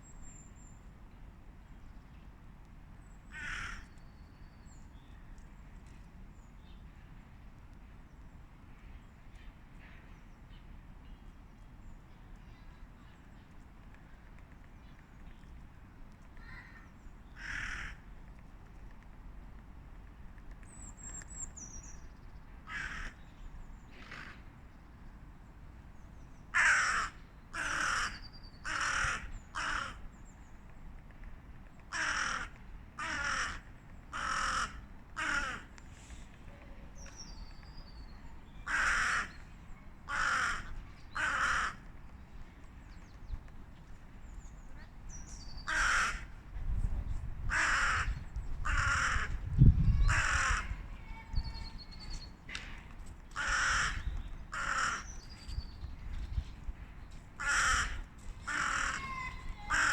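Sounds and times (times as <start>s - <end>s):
crow cawing: 3.3s - 3.9s, 17.4s - 18.0s, 22.7s - 23.2s, 26.6s - 30.0s, 31.9s - 35.7s, 38.7s - 39.4s, 40.1s - 41.9s, 45.7s - 46.3s, 47.5s - 49.4s, 50.0s - 50.8s, 53.4s - 55.1s, 57.4s - 59.9s.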